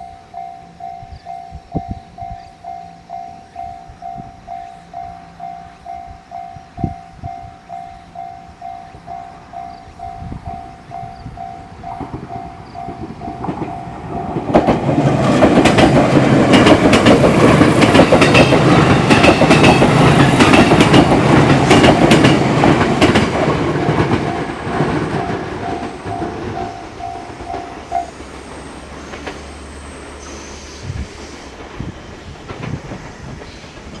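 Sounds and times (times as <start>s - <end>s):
train wheels clattering: 6.8s - 34.0s.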